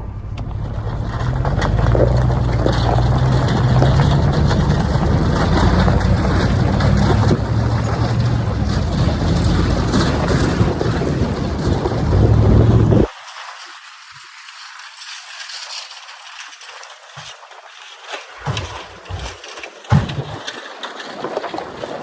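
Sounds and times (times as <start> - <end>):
vehicle engine under load: 0.0 - 13.1
wind noise on microphone: 0.0 - 13.1.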